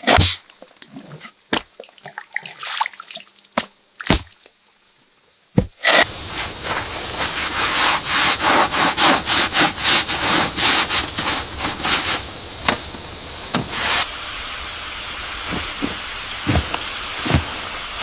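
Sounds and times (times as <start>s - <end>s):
steady hiss: 5.9s - 18.0s.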